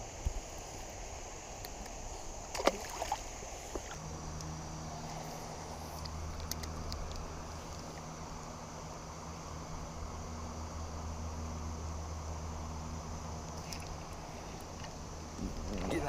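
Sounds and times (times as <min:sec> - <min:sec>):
low steady hum: 0:00.0 - 0:16.0
water lapping at kayak hull: 0:02.5 - 0:04.0.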